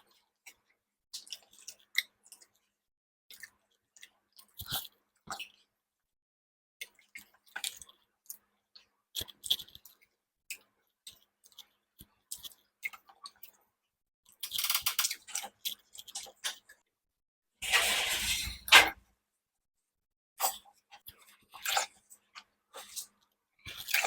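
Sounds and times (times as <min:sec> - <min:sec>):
chewing and smacking: 0:00.5 - 0:02.7, 0:03.3 - 0:05.7, 0:06.8 - 0:13.6, 0:14.3 - 0:16.8, 0:20.4 - 0:24.0.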